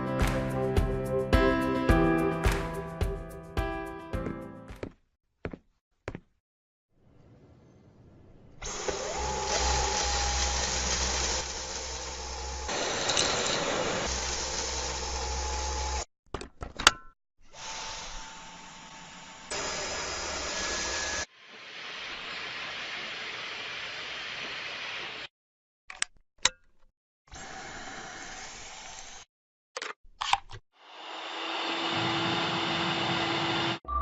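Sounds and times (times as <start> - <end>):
stick vacuum cleaner motor running: 8.6 - 16.0, 19.5 - 21.3, 30.9 - 33.8.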